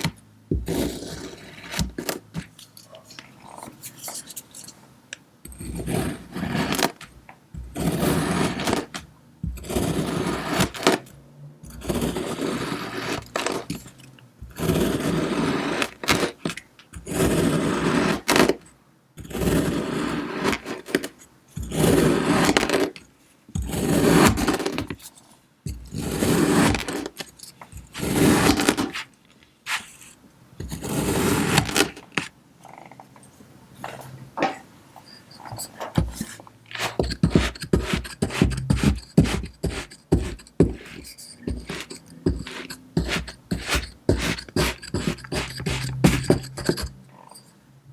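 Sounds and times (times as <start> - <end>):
kinetic sand being cut: 36.8 - 46.9.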